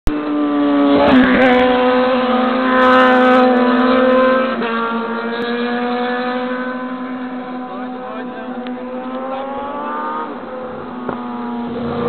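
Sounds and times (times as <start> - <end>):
car engine running at steady revs: 3.5 - 12.0.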